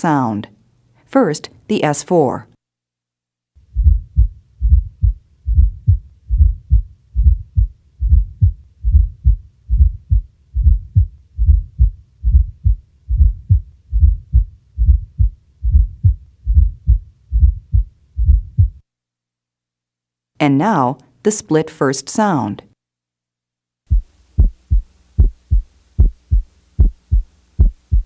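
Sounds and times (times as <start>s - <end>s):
heartbeat with extra low thud: 3.6s - 18.8s, 23.9s - 28.0s.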